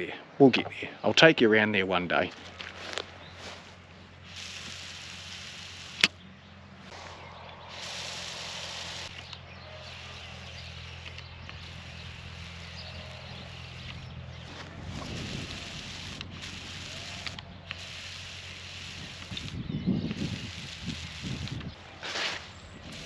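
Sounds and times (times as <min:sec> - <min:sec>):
steady low hum: 0:02.4 - 0:23.0
hissing spray: 0:04.2 - 0:06.2, 0:06.9 - 0:23.0.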